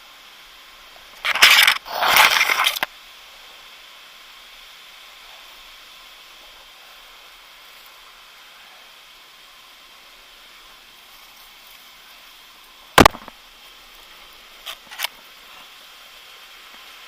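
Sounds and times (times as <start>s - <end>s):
steady hiss: 0.0s - 17.0s
loud rough scraping: 1.2s - 2.8s.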